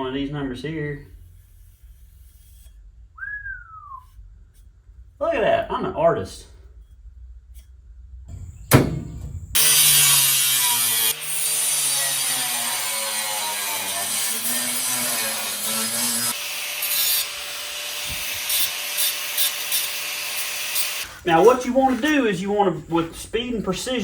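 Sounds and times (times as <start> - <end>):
sharp knock: 8.7 - 9.6
power tool cutting sheet metal: 9.6 - 22.1.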